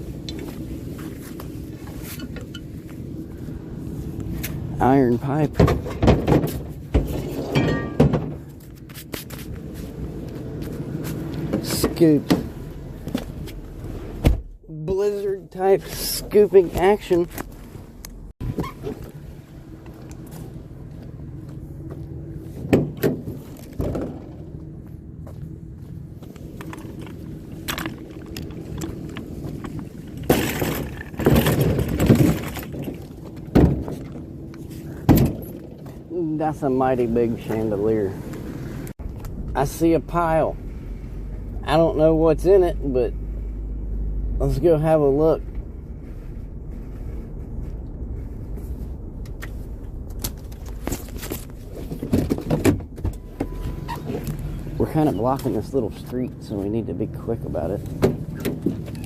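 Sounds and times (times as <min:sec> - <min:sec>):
vehicle engine humming: 0:00.0 - 0:59.0
loud clattering and rattling: 0:29.5 - 0:34.2.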